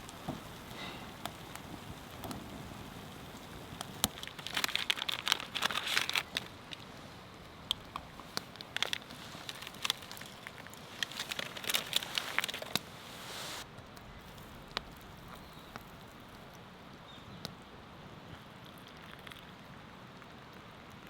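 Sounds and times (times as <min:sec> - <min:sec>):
firewood crackling and popping: 0:00.0 - 0:16.7.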